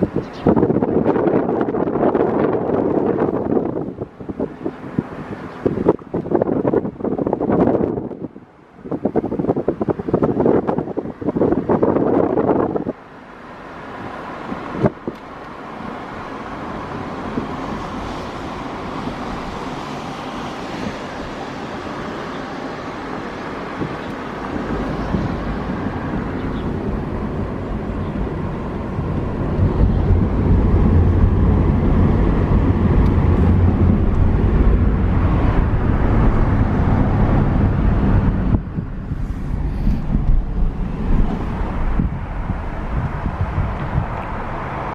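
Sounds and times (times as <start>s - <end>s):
car engine and road noise: 0.0s - 44.9s.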